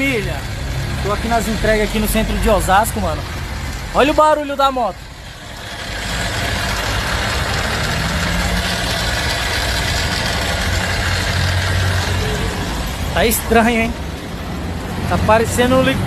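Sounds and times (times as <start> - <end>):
metallic engine clatter: 0.0 - 15.8
motorcycle engine running: 4.9 - 14.3.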